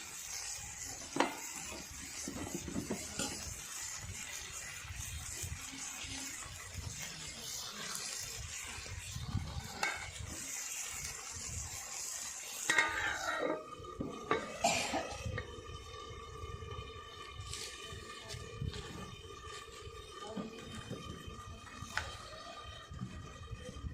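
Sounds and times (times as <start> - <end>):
curry sizzling in a pan: 0.0 - 23.0
spoon scraping and clinking pan: 9.7 - 10.2, 12.6 - 14.5.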